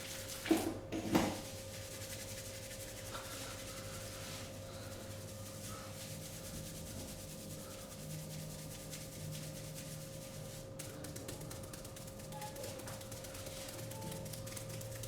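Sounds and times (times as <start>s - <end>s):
hands rubbing skin and hair: 2.1s - 15.0s.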